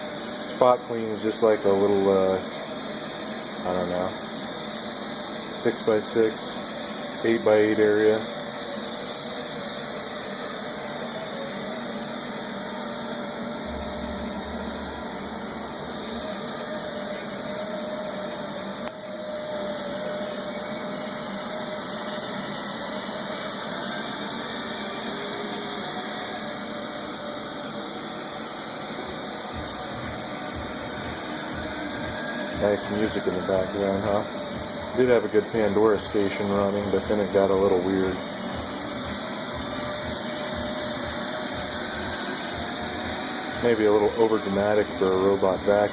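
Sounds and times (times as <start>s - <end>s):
robot vacuum whirring: 0.0s - 45.9s.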